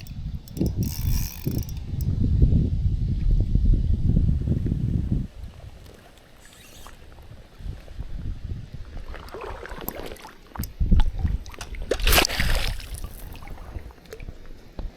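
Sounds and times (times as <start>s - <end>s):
wind on microphone: 0.0s - 9.9s, 10.6s - 14.9s
water splashing and sloshing: 8.8s - 14.7s.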